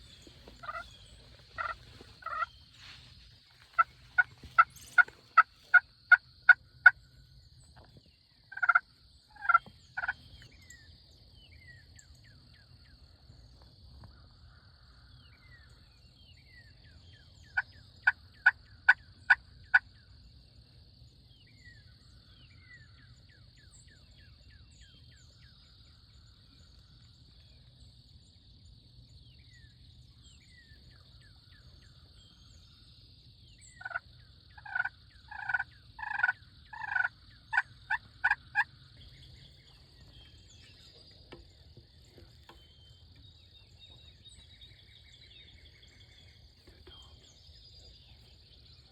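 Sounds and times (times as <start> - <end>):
wild turkeys calling: 0.0 - 7.0, 8.5 - 10.2, 17.5 - 19.8, 33.7 - 42.6
songbird chirps: 0.0 - 48.9.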